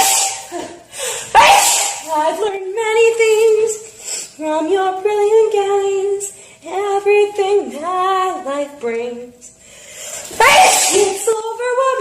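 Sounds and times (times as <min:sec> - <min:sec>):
girl singing slow melody: 0:02.0 - 0:09.6, 0:10.4 - 0:12.0.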